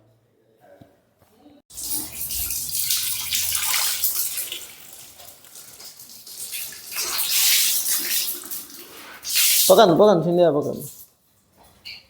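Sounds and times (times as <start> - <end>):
water running and splashing: 1.7 - 9.8.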